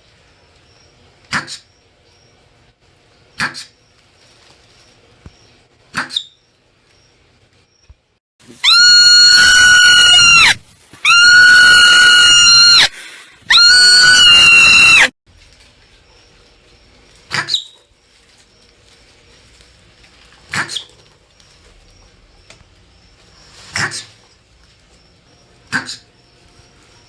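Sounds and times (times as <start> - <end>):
marmot screaming: 8.5 - 15.1.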